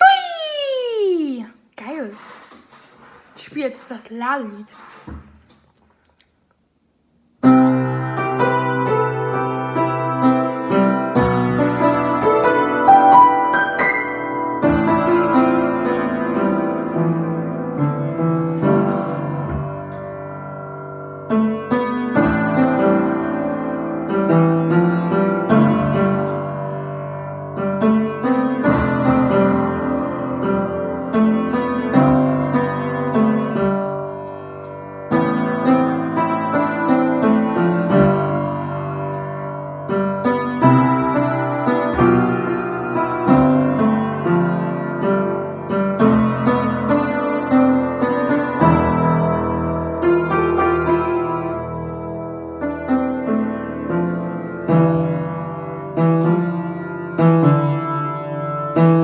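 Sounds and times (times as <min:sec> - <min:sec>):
piano chords and melody: 0:07.4 - 0:59.0.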